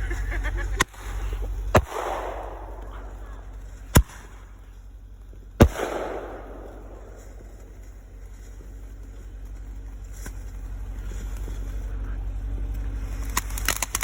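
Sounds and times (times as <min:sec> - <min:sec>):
fireworks exploding: 0:00.6 - 0:09.5.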